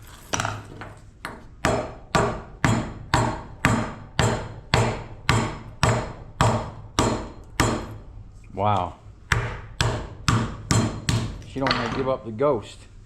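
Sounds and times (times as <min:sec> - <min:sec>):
hammer striking metal with ring: 0:01.7 - 0:08.0, 0:09.3 - 0:11.4.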